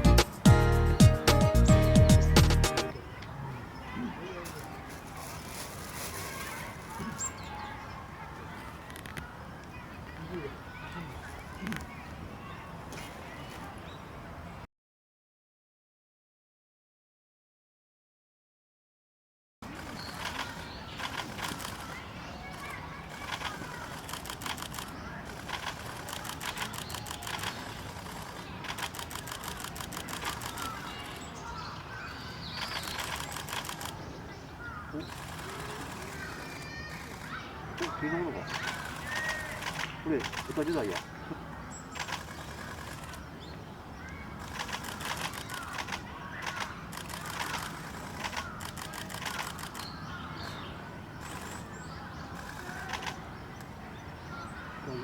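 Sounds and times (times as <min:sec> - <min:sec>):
camera shutters clicking: 0:19.7 - 0:22.0, 0:22.6 - 0:31.3, 0:32.4 - 0:34.0, 0:35.0 - 0:41.1, 0:41.9 - 0:43.2, 0:44.4 - 0:50.6, 0:52.3 - 0:53.7.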